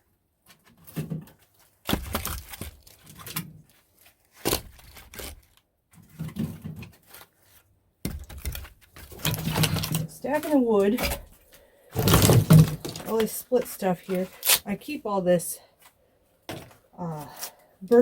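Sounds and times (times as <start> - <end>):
firewood pieces knocking together: 12.0 - 13.3.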